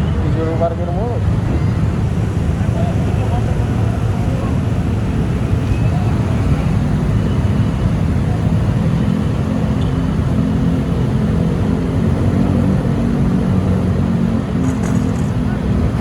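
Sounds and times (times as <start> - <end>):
diesel bus engine rumbling: 0.0 - 16.0.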